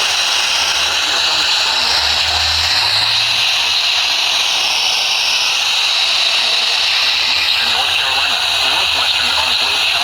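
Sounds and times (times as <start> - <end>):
radio static hiss: 6.3 - 10.0.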